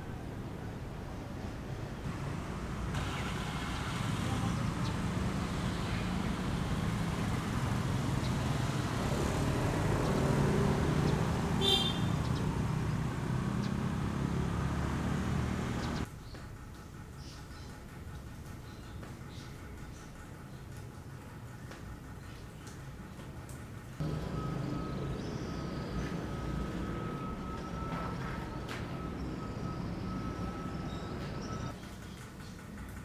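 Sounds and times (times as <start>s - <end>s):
road traffic: 0.0s - 16.2s, 24.0s - 32.9s
vehicle engine running: 3.0s - 16.1s, 24.0s - 31.7s.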